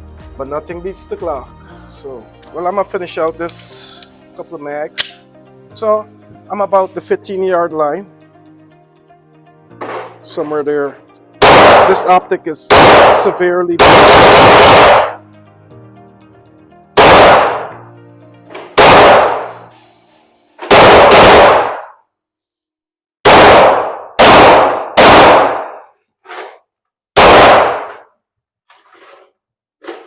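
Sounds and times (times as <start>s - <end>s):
handgun shots: 5.0s - 5.2s, 11.4s - 15.2s, 17.0s - 17.8s, 18.6s - 19.7s, 20.6s - 22.0s, 23.2s - 25.9s, 27.2s - 28.1s.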